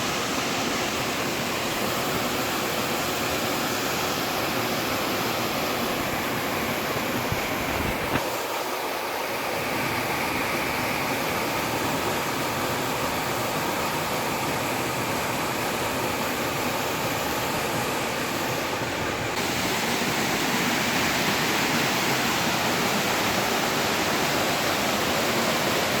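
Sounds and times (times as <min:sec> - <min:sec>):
waterfall rushing: 0:00.0 - 0:26.0.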